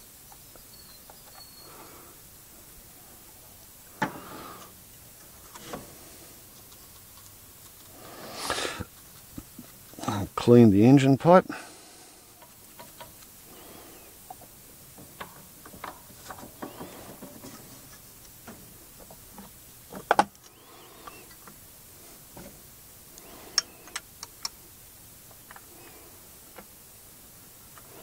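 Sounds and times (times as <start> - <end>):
rapid sharp clicks: 6.4 - 10.0
tools and parts clicking and knocking: 15.0 - 20.5.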